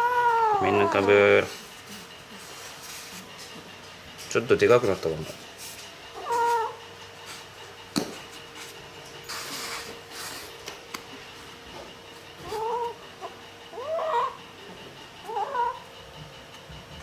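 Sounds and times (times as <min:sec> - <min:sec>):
kitten meowing: 0:00.0 - 0:01.2, 0:06.2 - 0:06.8, 0:12.4 - 0:13.0.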